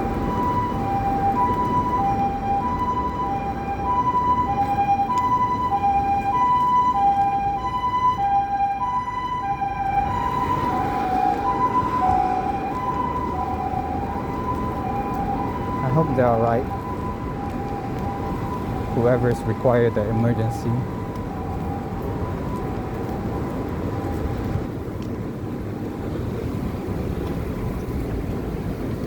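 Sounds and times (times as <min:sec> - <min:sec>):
ambulance siren two-tone call: 0:00.0 - 0:24.7
road and rain noise: 0:00.0 - 0:29.0.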